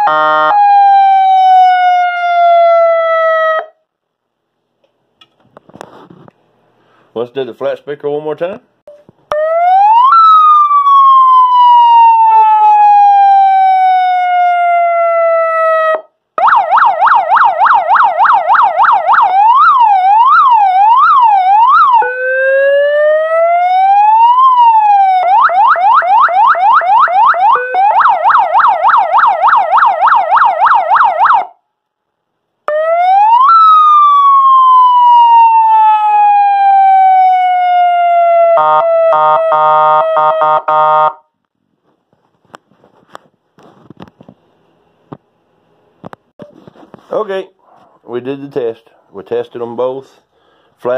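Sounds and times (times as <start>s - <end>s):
police siren wail and yelp: 0.0s - 3.8s, 9.3s - 31.6s, 32.7s - 41.3s.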